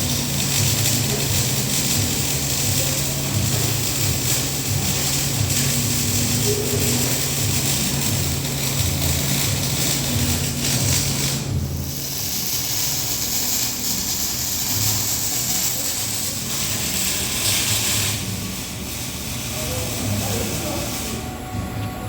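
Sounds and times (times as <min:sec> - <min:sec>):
welding arc hissing: 0:00.0 - 0:21.6.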